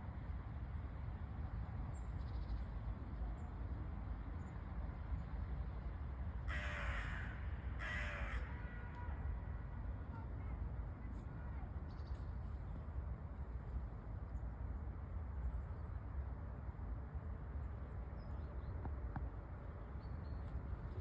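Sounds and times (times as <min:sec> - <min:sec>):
crow cawing: 0:06.5 - 0:09.2.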